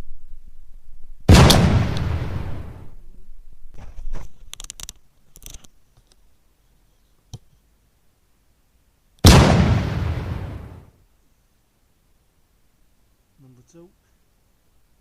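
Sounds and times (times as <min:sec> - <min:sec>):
cannon-like blast: 0:01.3 - 0:02.9, 0:09.2 - 0:10.9
light clicks and rustles: 0:03.7 - 0:07.7.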